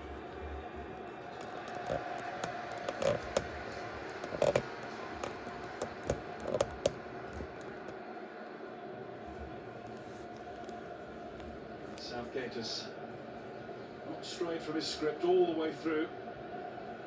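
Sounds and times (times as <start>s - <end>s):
sharp clicks and knocks: 1.4s - 8.0s.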